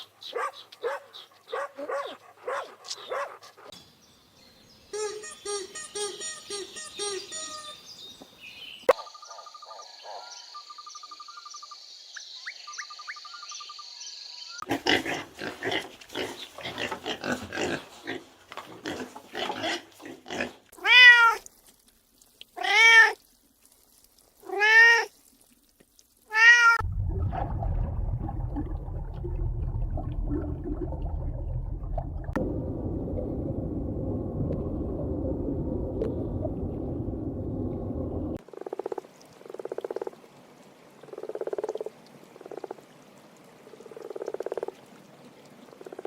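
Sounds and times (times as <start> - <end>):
cat meowing: 26.3 - 26.8
low steady rumble: 26.8 - 38.4.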